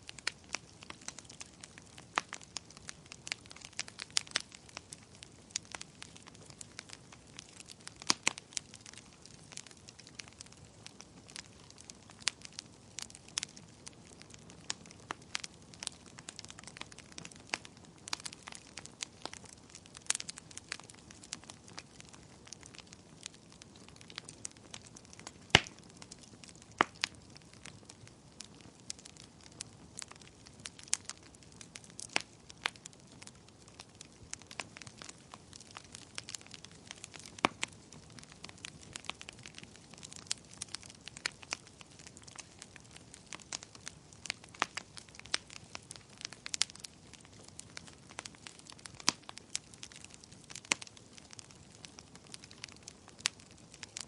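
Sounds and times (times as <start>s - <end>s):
fire crackling and popping: 0.0s - 54.0s
soft steady hiss: 0.0s - 54.0s.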